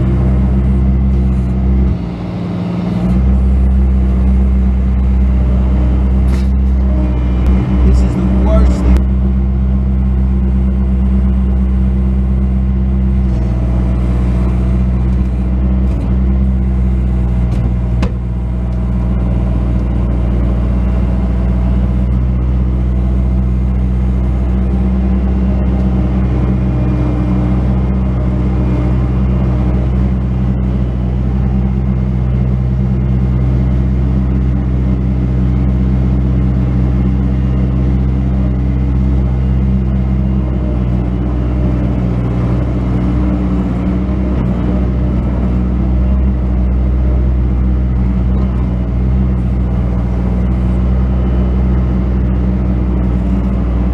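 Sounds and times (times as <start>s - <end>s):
diesel engine running: 0.0s - 53.9s
knock: 17.6s - 18.2s.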